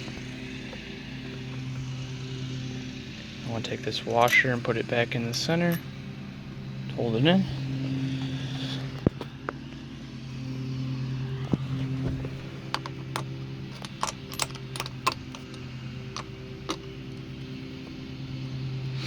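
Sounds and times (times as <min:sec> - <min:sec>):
low hum: 0:00.0 - 0:19.0
metallic clicks and taps: 0:12.7 - 0:17.3.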